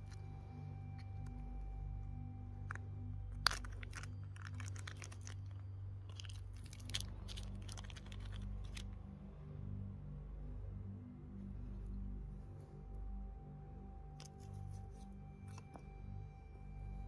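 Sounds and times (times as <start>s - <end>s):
background music: 0.0s - 17.0s
crunches and clicks: 2.6s - 9.0s, 14.2s - 16.0s.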